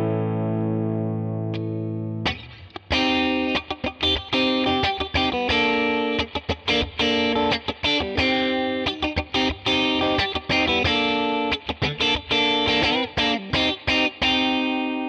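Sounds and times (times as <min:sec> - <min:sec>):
overdriven electric guitar chords: 0:00.0 - 0:15.0.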